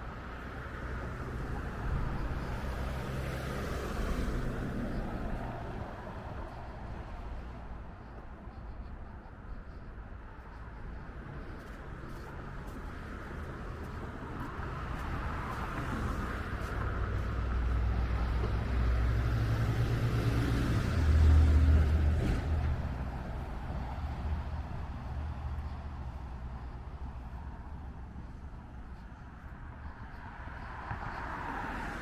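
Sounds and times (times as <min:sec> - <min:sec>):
vehicle passing by: 0:00.8 - 0:07.5, 0:12.1 - 0:28.4.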